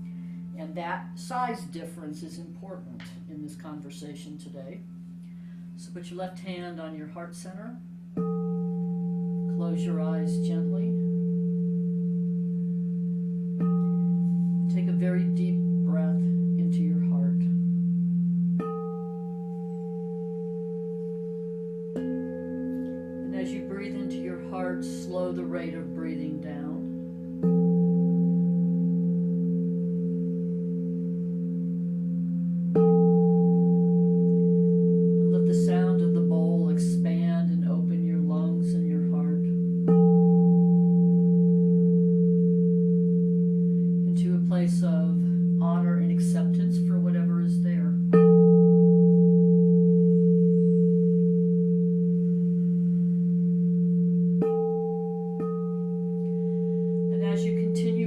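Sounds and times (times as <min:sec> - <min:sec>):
person's voice: 0:00.6 - 0:04.8, 0:05.8 - 0:07.8, 0:09.6 - 0:11.0, 0:14.7 - 0:17.5, 0:23.3 - 0:26.8, 0:35.2 - 0:39.5, 0:44.1 - 0:48.0, 0:57.1 - 0:58.0
singing bowls ringing: 0:07.8 - 0:58.0
singing bowl struck: 0:10.9 - 0:14.9, 0:17.4 - 0:26.1, 0:26.7 - 0:36.7, 0:39.4 - 0:44.1, 0:47.9 - 0:58.0.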